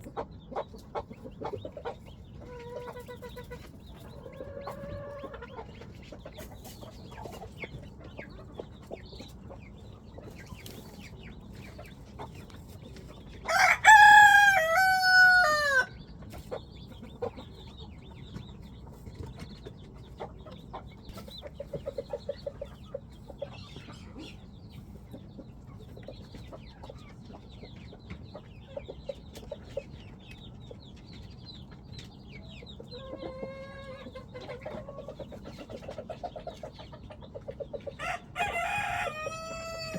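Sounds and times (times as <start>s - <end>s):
chickens clucking: 0.0s - 39.9s
rooster crowing: 13.5s - 15.9s, 38.0s - 39.9s.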